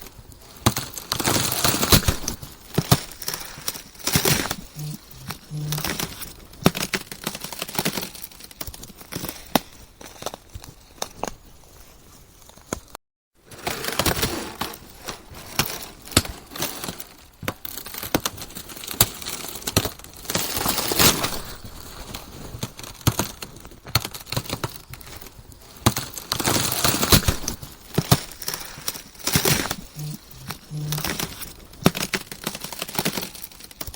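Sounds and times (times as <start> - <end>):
ice cracking: 13.6 - 33.9.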